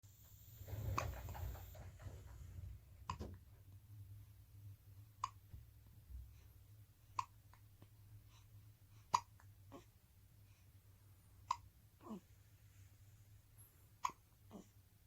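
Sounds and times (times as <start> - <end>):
baby hiccupping: 9.0 - 9.9, 11.4 - 12.2, 14.0 - 14.8.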